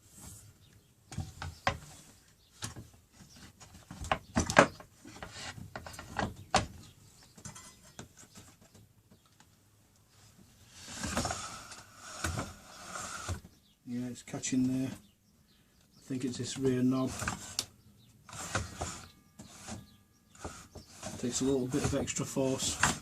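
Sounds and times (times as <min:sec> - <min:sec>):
saw sliding scrape: 0:10.7 - 0:13.4, 0:17.0 - 0:17.7, 0:18.3 - 0:23.0.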